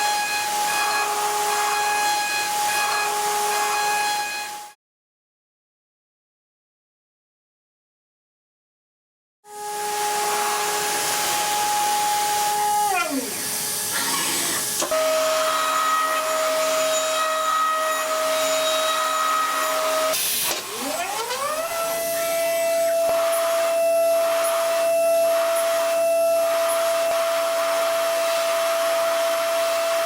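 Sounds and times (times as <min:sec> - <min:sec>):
hiss of cutting noise: 0:09.8 - 0:17.1, 0:18.4 - 0:30.0.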